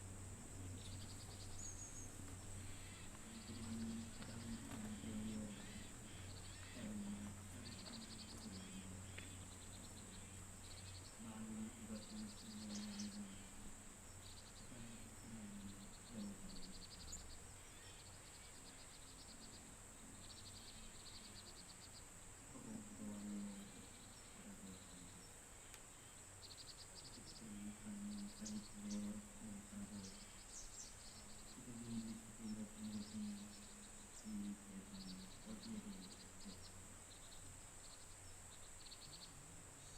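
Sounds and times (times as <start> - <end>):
distant voice chanting prayer: 0.0 - 21.8, 22.4 - 25.4, 27.0 - 30.4, 31.2 - 37.6, 38.9 - 39.9
crickets chirping in trills: 0.0 - 39.9
high-pitched insect drone: 2.6 - 13.7.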